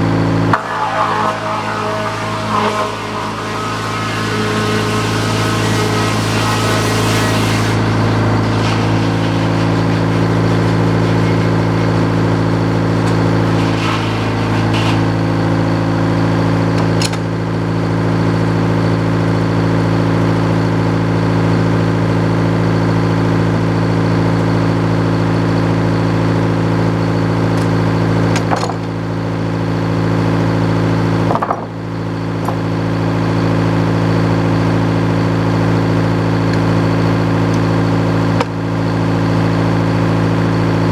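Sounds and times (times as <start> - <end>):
sawmill engine running: 0.0 - 17.2.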